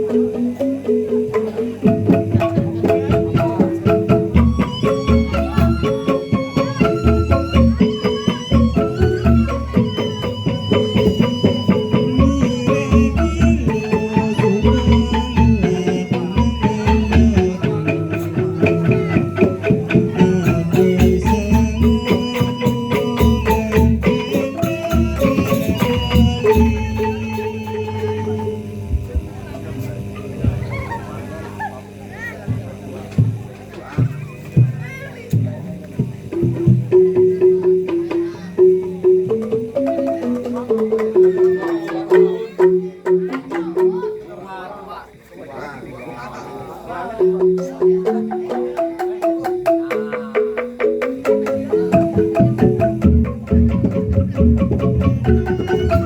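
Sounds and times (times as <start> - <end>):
folk ensemble fast melody: 0.0 - 30.6, 32.5 - 44.4, 47.1 - 56.0
steady drumming: 0.0 - 44.4, 47.2 - 56.0.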